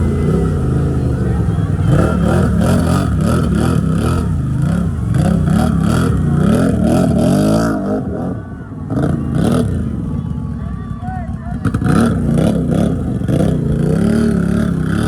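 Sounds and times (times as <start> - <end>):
atv engine revving: 0.0 - 15.0.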